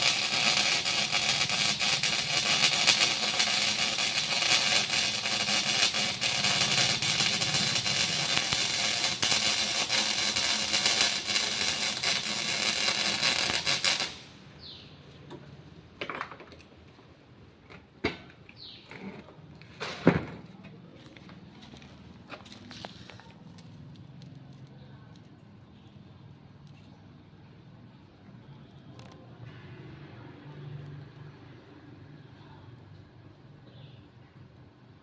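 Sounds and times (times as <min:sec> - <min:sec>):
welding arc crackling: 0:00.0 - 0:14.4.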